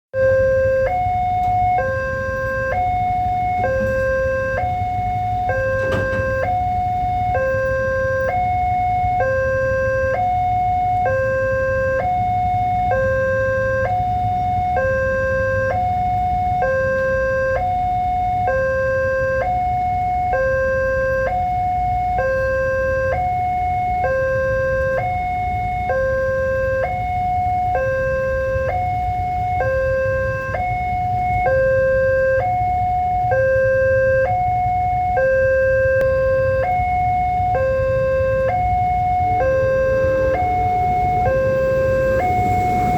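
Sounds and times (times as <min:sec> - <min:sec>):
two-tone crossing alarm: 0:00.1 - 0:42.9
low steady rumble: 0:23.7 - 0:42.9.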